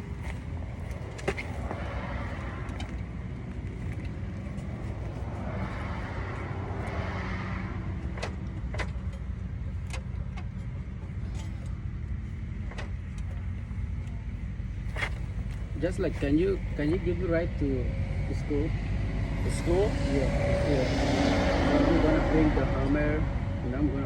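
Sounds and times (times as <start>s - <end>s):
vehicle passing: 0.0s - 9.2s, 15.6s - 24.0s
car engine running: 0.0s - 24.0s.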